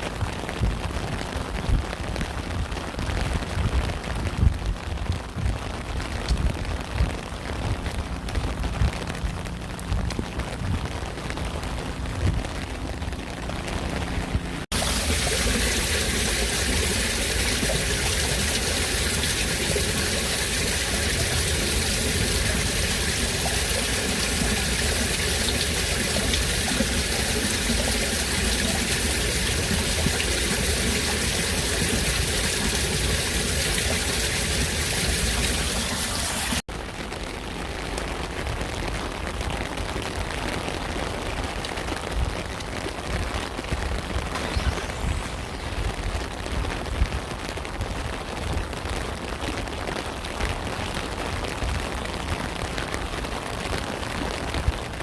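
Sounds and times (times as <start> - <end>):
heavy rain hissing: 0.0 - 37.6, 38.2 - 55.0
crackling patter of rain: 0.0 - 55.0
running water: 5.0 - 36.7, 42.7 - 47.6.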